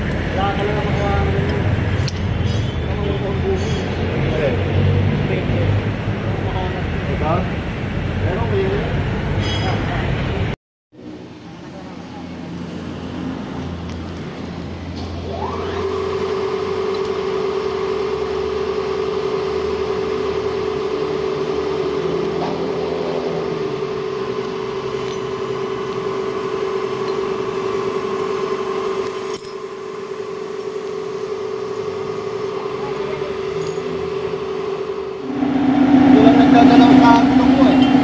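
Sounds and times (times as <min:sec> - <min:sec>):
machine whining: 0:14.4 - 0:38.0.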